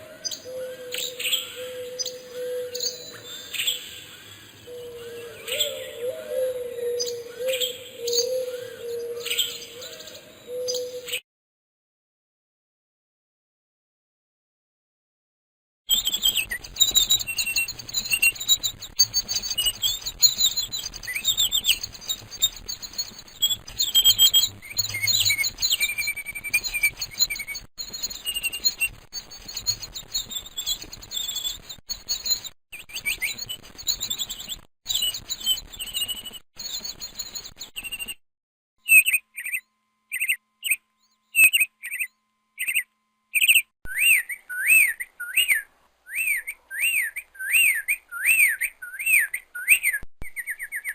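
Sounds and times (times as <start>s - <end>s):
birds chirping and trilling: 0.0s - 11.2s, 15.9s - 38.2s, 38.8s - 50.9s
bird whistling swooping notes: 0.2s - 11.2s, 43.5s - 50.9s.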